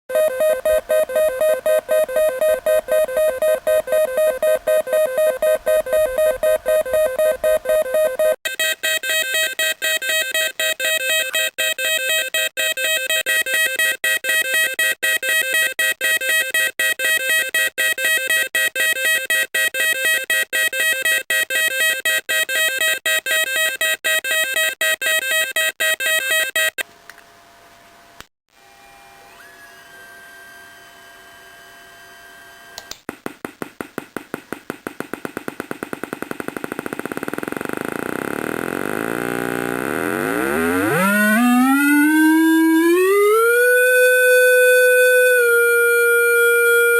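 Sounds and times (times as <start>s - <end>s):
electronic oscillators pulsing: 0.1s - 8.4s, 33.8s - 46.9s
pulsing electronic beat: 0.1s - 8.4s
click: 32.8s - 33.0s.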